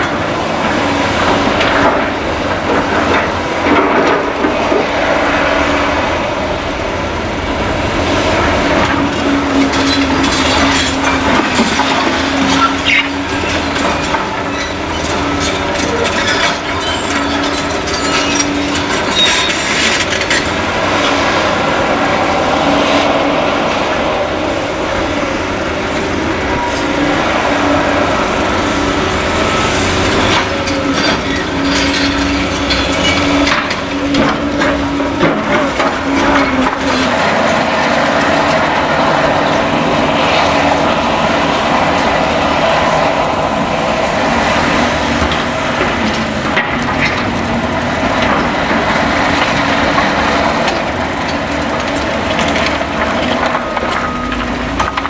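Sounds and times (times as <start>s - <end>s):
diesel excavator engines: 0.0s - 55.0s
debris and metal clattering: 8.8s - 21.4s, 29.4s - 38.6s.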